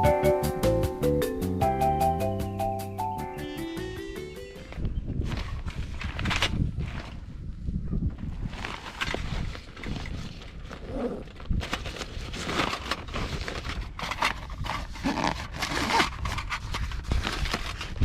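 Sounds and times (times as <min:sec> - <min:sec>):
irregular rustling and scraping: 0:04.7 - 0:07.4, 0:08.0 - 0:18.0.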